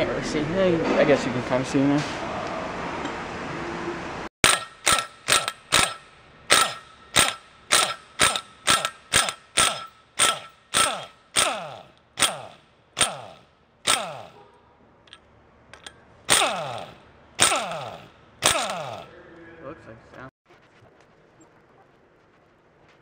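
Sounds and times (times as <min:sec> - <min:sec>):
ratchet wrench ratcheting: 0:04.4 - 0:14.4, 0:15.1 - 0:19.1.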